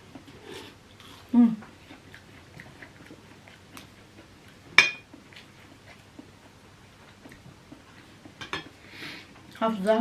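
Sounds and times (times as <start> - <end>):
faint clicks of eating: 0.1 - 9.9
cutlery clinking against a dish: 4.8 - 5.1.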